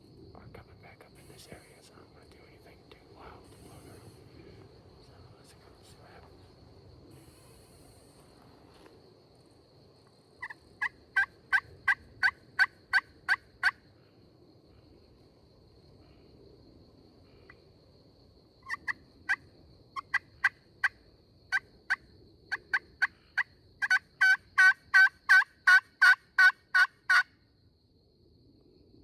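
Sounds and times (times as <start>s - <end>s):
turkey call clucks: 10.4s - 13.8s, 18.6s - 19.4s, 20.0s - 27.3s
turkey call yelps: 10.4s - 13.8s, 23.4s - 27.3s.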